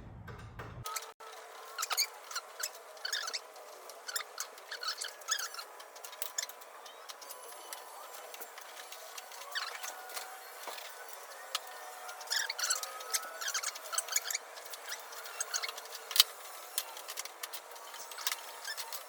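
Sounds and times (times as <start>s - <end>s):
short high squeaks: 0.9s - 5.7s.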